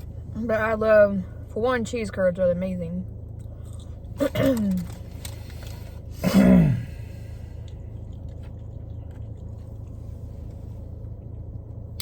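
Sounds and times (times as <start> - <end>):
low steady hum: 0.0 - 12.0
quiet chewing of food: 7.0 - 12.0.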